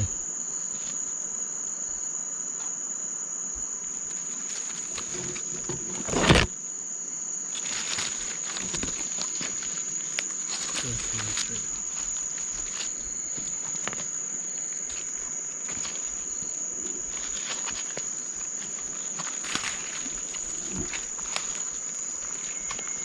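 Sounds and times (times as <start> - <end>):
night insects trilling: 0.0 - 23.0
footsteps in leaf litter: 7.5 - 23.0.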